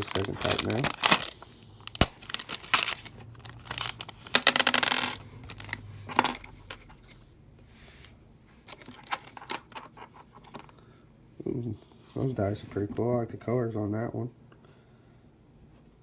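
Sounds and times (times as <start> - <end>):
foil pack tearing and crinkling: 0.0 - 4.4.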